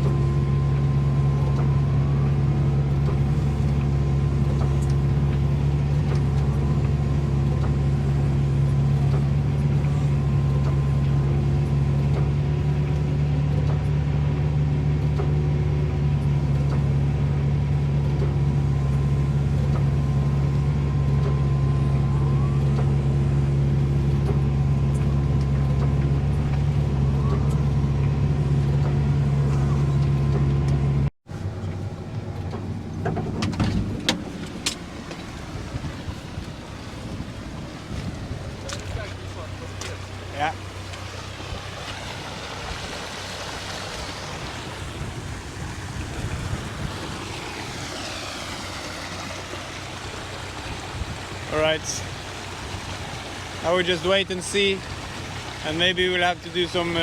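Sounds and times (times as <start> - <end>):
excavator diesel engine running: 0.0 - 57.0
faint rising whines: 18.4 - 57.0.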